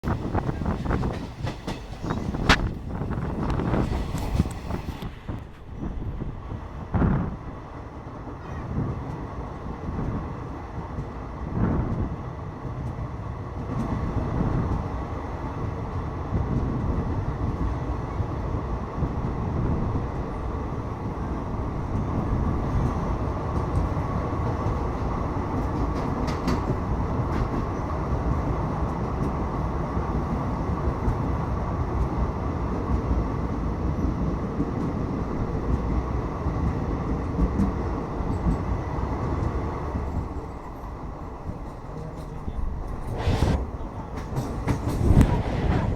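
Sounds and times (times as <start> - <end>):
train wheels rumbling on rail: 0.0 - 45.9
knocks of train wheels: 0.1 - 5.7, 25.5 - 27.8, 44.1 - 45.9.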